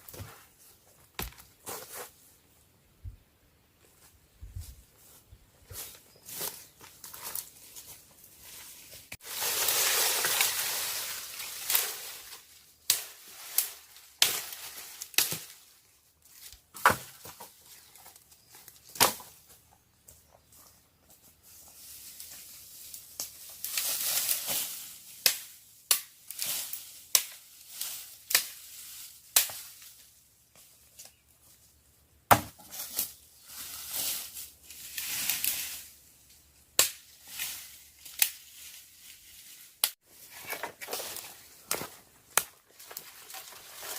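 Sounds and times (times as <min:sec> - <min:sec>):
dry leaves crunching: 0:05.0 - 0:16.5, 0:21.5 - 0:25.4, 0:37.2 - 0:43.9
dry sticks snapping: 0:25.2 - 0:26.4, 0:27.1 - 0:27.4, 0:36.8 - 0:37.1, 0:38.0 - 0:38.4, 0:41.7 - 0:42.6.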